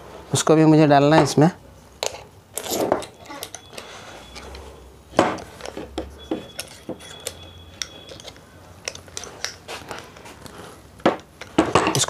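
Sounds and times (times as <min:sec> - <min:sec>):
metallic clicks and clinks: 0:02.0 - 0:04.7, 0:05.4 - 0:10.2.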